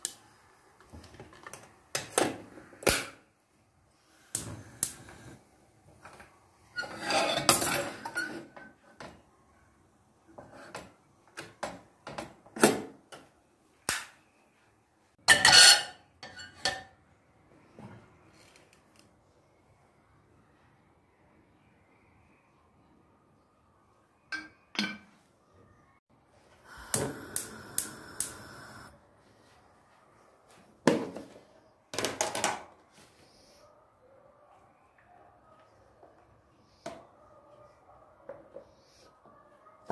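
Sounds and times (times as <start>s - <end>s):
dishes and utensils clattering: 6.7s - 9.2s, 15.2s - 17.0s.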